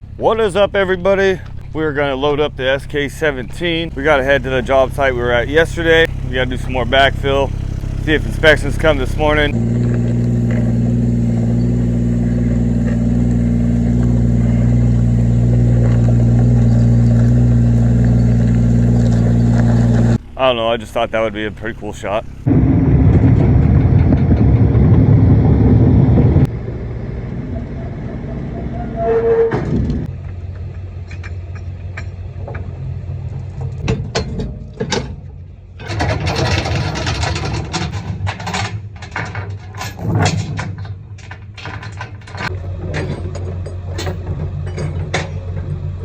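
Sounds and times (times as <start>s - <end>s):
diesel engine running: 0.0s - 39.8s, 41.0s - 46.0s
metallic knocks and rattles: 33.4s - 46.0s.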